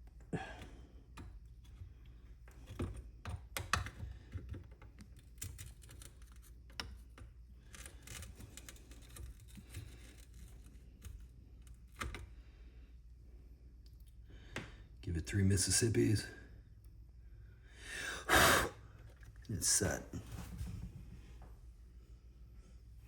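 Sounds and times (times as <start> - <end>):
low steady hum: 0.0 - 18.2, 18.8 - 23.0
clicks and taps of tools on wires: 1.1 - 12.3.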